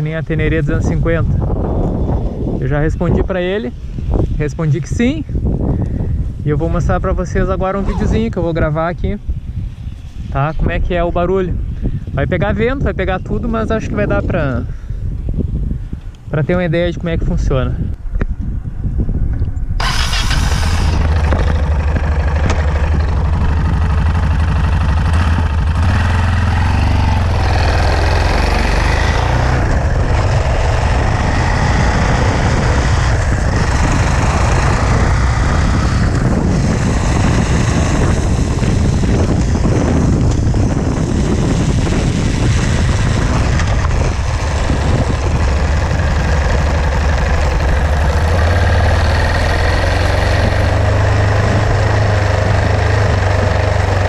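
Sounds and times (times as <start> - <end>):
wind noise on microphone: 0.0 - 54.0
motorcycle engine running: 19.8 - 54.0.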